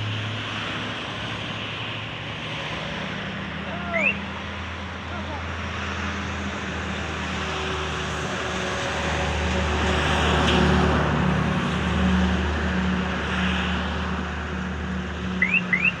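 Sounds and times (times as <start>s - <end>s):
short rising chirps: 15.4s - 15.9s.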